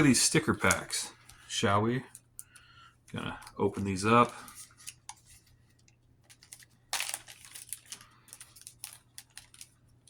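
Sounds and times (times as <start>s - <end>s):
packaging crinkling and rustling: 3.1s - 10.0s.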